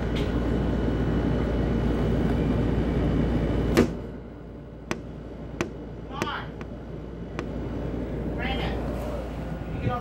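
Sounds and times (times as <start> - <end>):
sharp knock: 4.9 - 6.8.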